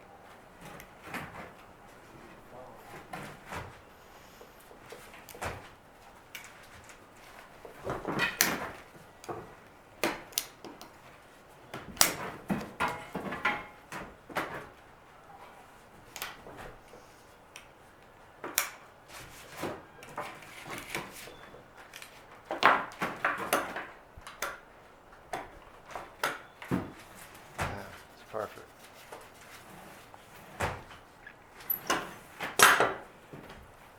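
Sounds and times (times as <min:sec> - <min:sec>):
wood and hand tools knocking: 0:11.7 - 0:14.8, 0:22.3 - 0:24.6.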